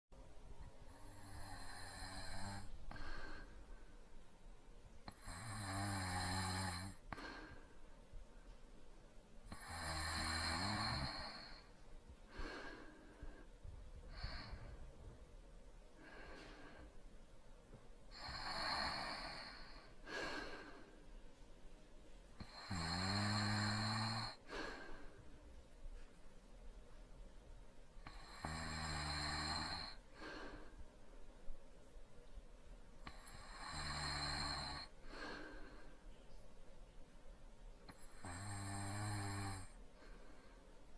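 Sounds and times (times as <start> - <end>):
soft breathing: 0.2 - 40.9
light snoring: 0.6 - 3.6, 5.0 - 7.6, 9.4 - 15.2, 18.1 - 20.9, 22.4 - 25.2, 28.0 - 30.7, 33.0 - 36.0, 37.9 - 40.5
loud low-pitched snore: 9.5 - 11.6, 22.4 - 24.4, 33.1 - 34.9.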